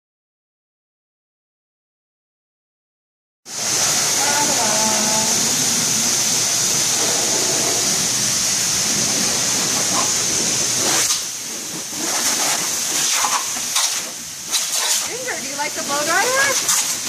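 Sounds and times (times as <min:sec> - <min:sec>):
blow dryer blowing air: 0:03.5 - 0:17.0.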